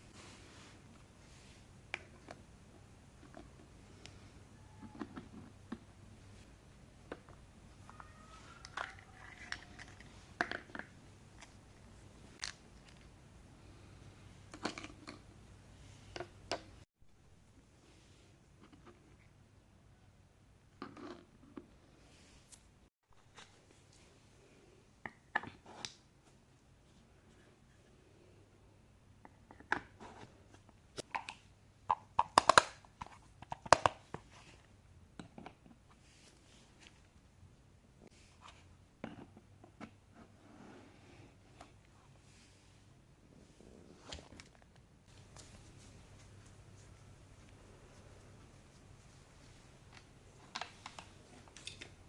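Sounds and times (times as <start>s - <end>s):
faint thin squeak: 7.9s - 9.9s.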